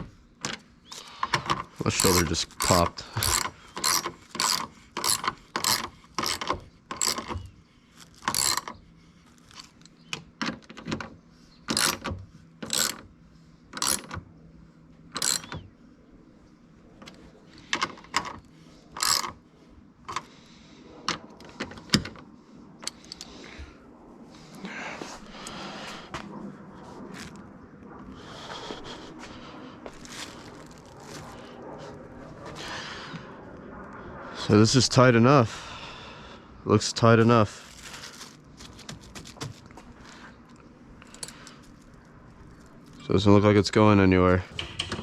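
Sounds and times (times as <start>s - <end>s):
socket ratchet clicking: 1.3s - 7.4s, 8.2s - 8.8s, 11.7s - 13.0s, 13.8s - 14.2s, 15.1s - 15.6s, 19.0s - 19.3s.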